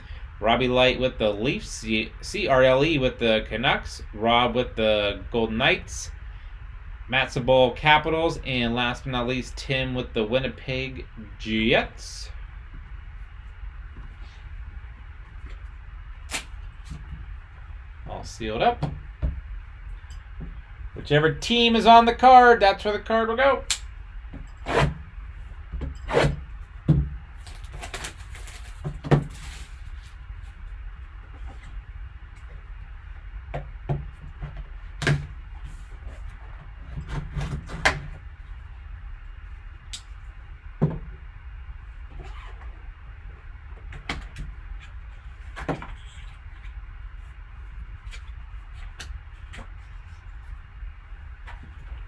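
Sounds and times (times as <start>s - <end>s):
steady low hum: 0.0s - 52.0s
box scrapes and rustles: 27.4s - 30.2s.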